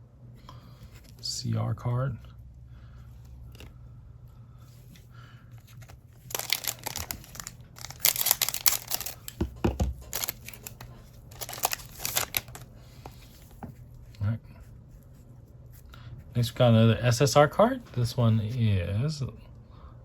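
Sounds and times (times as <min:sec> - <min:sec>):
foil wrapper crinkling and tearing: 0:05.6 - 0:09.4, 0:10.0 - 0:12.7.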